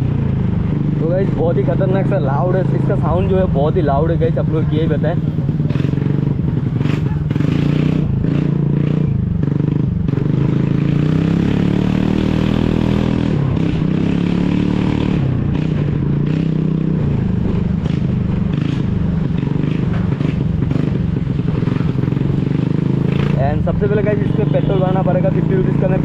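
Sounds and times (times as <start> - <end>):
scooter engine with open exhaust: 0.0 - 1.9, 2.7 - 11.7, 12.7 - 26.0.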